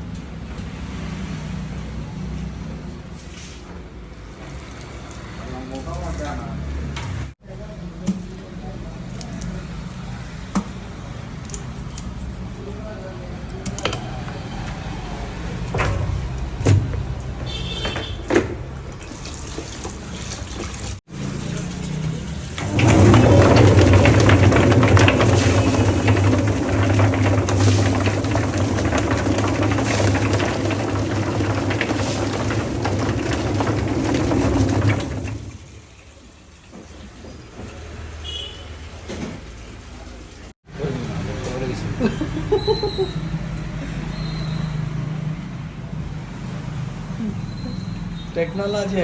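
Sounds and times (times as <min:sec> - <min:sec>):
wet knocks and splashes: 0:15.8 - 0:21.0
spattering rattling noise: 0:21.4 - 0:35.8
machine motor humming: 0:22.0 - 0:35.7.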